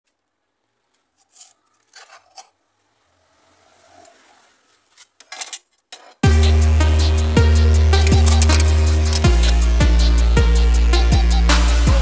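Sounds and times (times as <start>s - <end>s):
faint scraping and rubbing: 0.8s - 6.2s.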